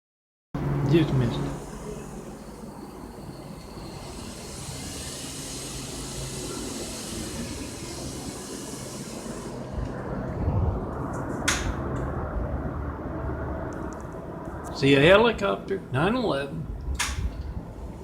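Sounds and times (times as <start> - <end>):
vehicle passing: 0.6 - 5.0, 9.2 - 16.8
sharp click: 11.4 - 11.8, 16.9 - 17.5.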